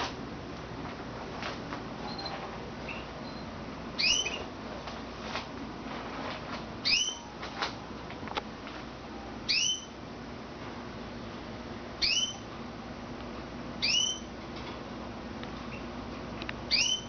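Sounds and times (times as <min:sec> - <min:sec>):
canary whistled call: 0:04.0 - 0:04.4, 0:06.8 - 0:07.3, 0:09.5 - 0:10.0, 0:12.0 - 0:12.5, 0:13.8 - 0:14.3, 0:16.7 - 0:17.0.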